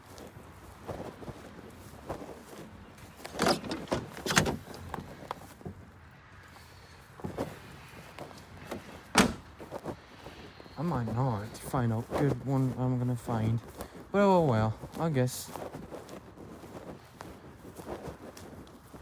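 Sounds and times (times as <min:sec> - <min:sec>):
handling scrapes and knocks: 0:03.0 - 0:05.8.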